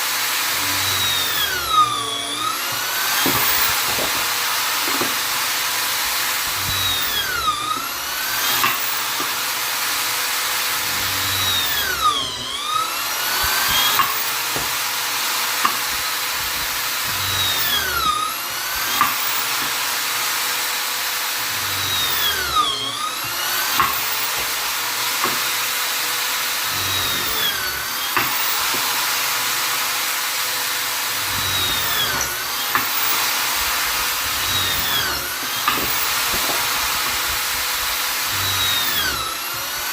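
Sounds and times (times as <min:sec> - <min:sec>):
electric drill drilling into wood: 0:00.0 - 0:39.9.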